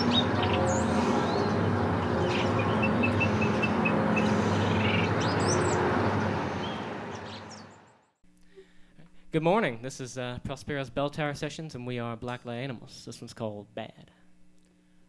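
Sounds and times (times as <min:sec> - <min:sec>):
low rumble and hum: 0:00.0 - 0:07.8
birds chirping: 0:00.0 - 0:08.1.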